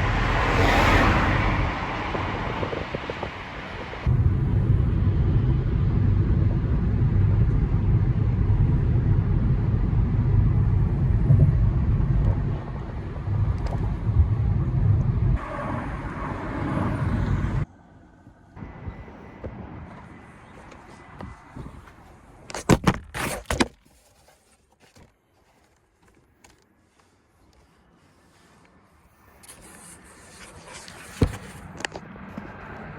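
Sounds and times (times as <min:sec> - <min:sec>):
car road and engine rumble: 0:00.0 - 0:23.6, 0:27.6 - 0:32.9.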